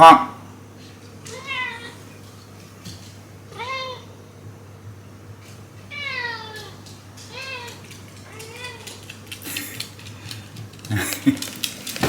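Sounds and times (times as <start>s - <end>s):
cat meowing: 1.2s - 2.1s, 3.5s - 4.2s, 5.8s - 9.1s.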